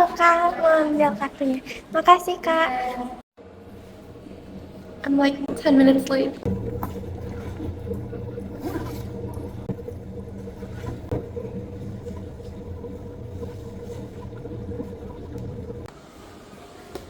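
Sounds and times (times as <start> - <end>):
low machine hum: 3.4 - 15.9.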